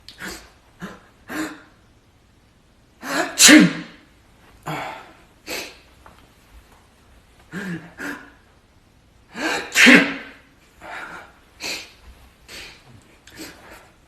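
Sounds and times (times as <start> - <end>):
person sneezing: 0.1 - 1.8, 3.0 - 4.0, 4.7 - 5.8, 9.4 - 13.9.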